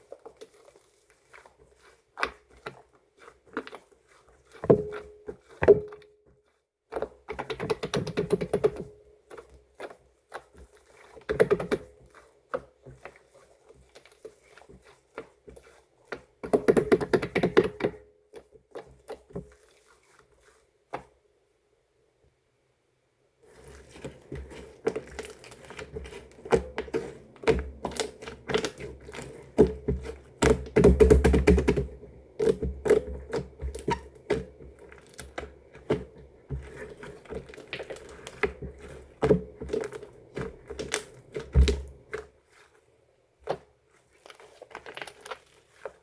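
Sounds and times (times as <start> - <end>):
slime squished by hand: 23.6 - 46.0.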